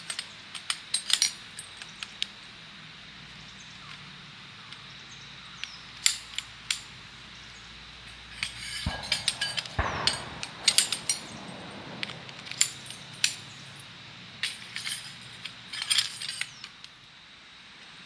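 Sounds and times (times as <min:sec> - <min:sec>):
light metallic clinks: 0:00.0 - 0:02.3, 0:05.6 - 0:07.0, 0:08.0 - 0:17.0.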